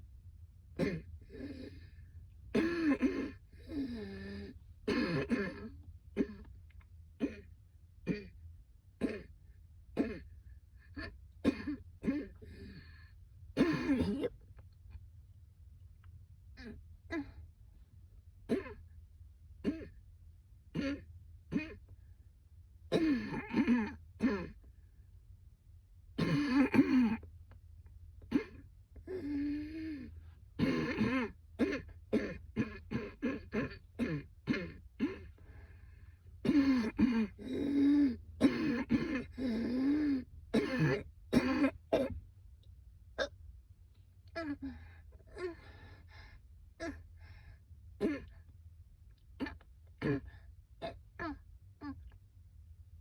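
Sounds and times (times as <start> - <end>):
woman coughing: 0.8 - 1.1, 2.6 - 3.4, 4.9 - 6.5, 11.4 - 12.5, 13.6 - 14.4, 22.9 - 24.6, 26.2 - 27.2, 30.6 - 35.3, 36.4 - 39.9, 40.5 - 42.2, 48.0 - 48.4, 49.4 - 51.4
woman clearing throat: 0.8 - 1.7, 2.6 - 4.2, 4.9 - 6.6, 7.2 - 7.5, 8.1 - 8.4, 9.0 - 9.3, 10.0 - 10.3, 10.9 - 12.8, 13.6 - 14.4, 18.5 - 18.8, 19.6 - 20.0, 20.7 - 21.9, 22.9 - 24.7, 26.2 - 27.3, 28.3 - 35.4, 36.4 - 42.2, 48.0 - 48.4, 49.4 - 52.1.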